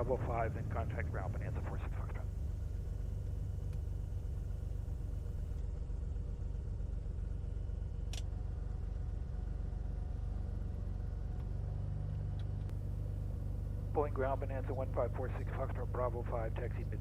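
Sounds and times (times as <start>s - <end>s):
aircraft piston engine rumbling: 0.0s - 17.0s.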